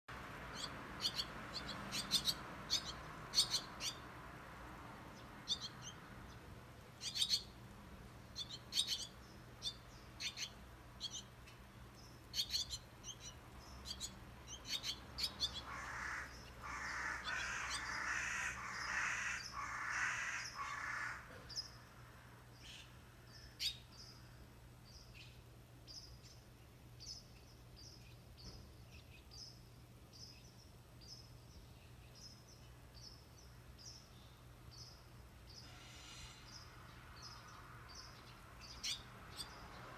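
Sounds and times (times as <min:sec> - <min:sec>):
crow cawing: 0:15.6 - 0:21.4.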